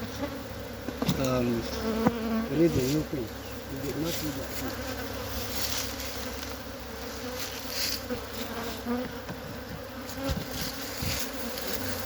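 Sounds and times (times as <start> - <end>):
honeybees buzzing: 0.0 - 12.0
low knock on hive: 0.8 - 2.5, 8.9 - 11.2.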